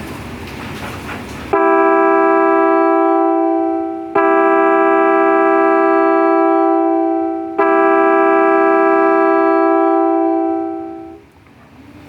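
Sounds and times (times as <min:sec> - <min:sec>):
electric horn organ-like chord: 0:01.6 - 0:11.2.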